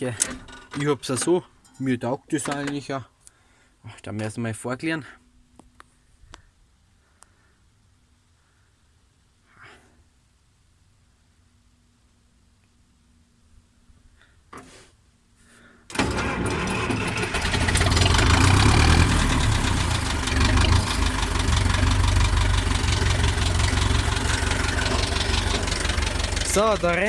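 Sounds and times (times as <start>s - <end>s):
diesel tractor engine starting: 15.9s - 27.0s.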